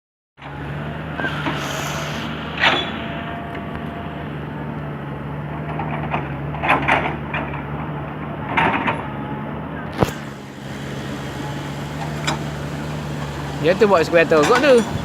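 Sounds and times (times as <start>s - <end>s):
excavator engine running: 0.4s - 15.0s.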